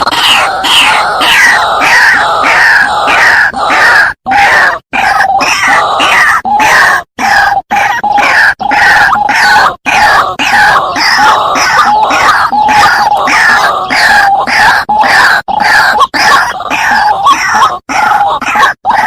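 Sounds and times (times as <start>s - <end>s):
waterhen harsh croaking calls: 0.0s - 19.0s.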